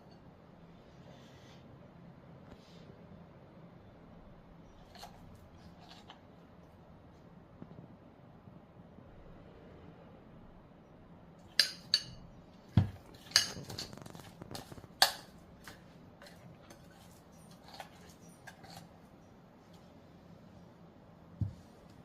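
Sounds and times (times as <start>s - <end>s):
utensil clinking against a dish: 11.4s - 18.9s.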